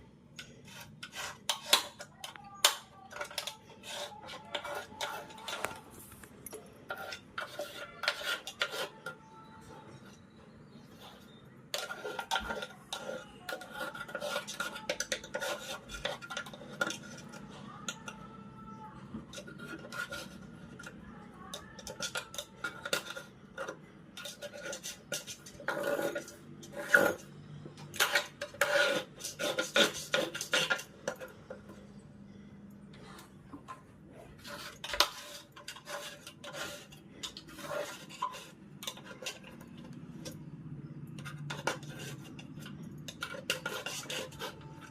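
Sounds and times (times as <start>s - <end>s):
metal spoon scraping window track: 0.0s - 32.0s, 33.0s - 44.9s.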